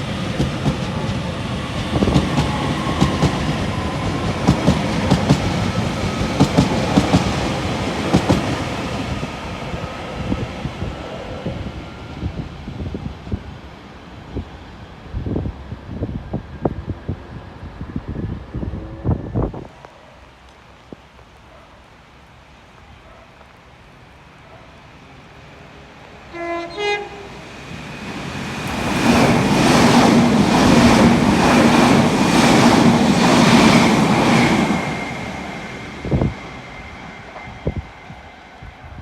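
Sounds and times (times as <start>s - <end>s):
train running through station: 0.0s - 20.0s, 24.1s - 39.0s
train horn blast: 26.3s - 27.4s.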